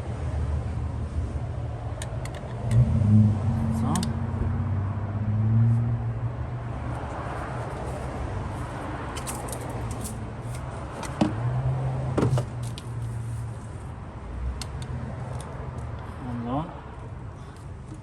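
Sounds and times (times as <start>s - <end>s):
clicks and knocks of handled parts: 2.0s - 2.8s, 7.7s - 11.4s, 12.3s - 13.0s.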